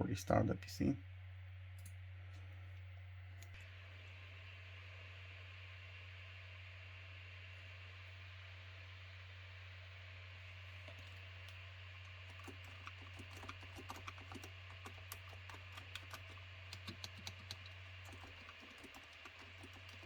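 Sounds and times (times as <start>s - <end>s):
steady low hum: 0.0s - 20.0s
quiet keyboard typing: 10.8s - 20.0s.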